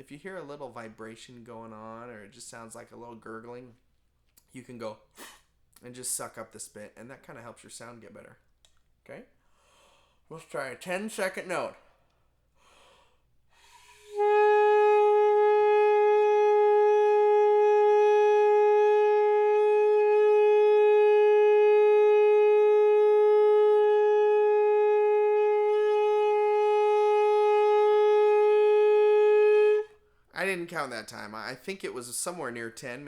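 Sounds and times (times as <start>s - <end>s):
quick breath in: 9.5s - 10.3s, 12.6s - 14.2s
alto saxophone long tone: 13.8s - 30.0s.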